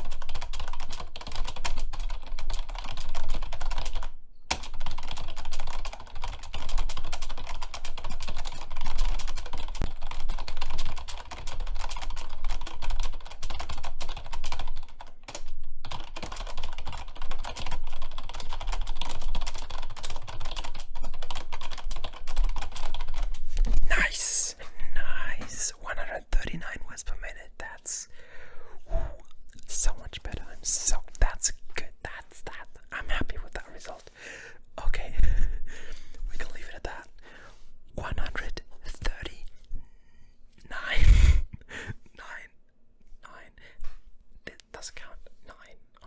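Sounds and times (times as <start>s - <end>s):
fast typing on computer keyboard: 0.0s - 23.5s.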